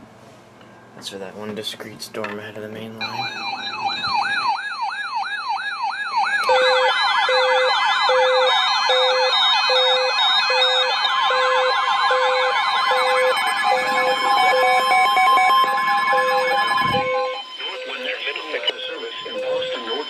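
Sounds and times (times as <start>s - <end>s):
low pulsing beep: 3.0s - 4.6s, 12.9s - 20.0s
steady high tone: 3.0s - 4.9s, 6.2s - 20.0s
electronic siren wail: 3.0s - 20.0s.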